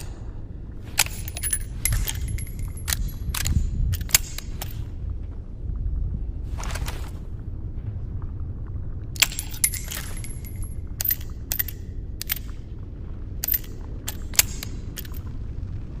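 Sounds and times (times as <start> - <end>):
low rumble: 0.0 - 16.0
revolver metallic clicks: 0.9 - 5.0, 9.2 - 15.5.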